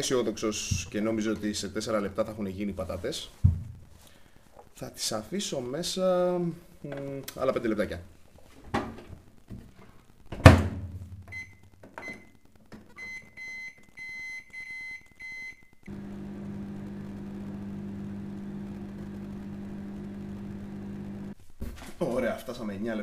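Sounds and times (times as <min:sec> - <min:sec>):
keypad beeps: 0:13.0 - 0:15.7
microwave humming: 0:15.8 - 0:21.4.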